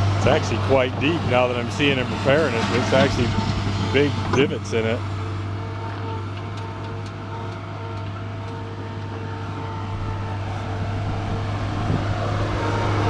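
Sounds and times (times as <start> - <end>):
skid loader engine humming: 0.0 - 13.0.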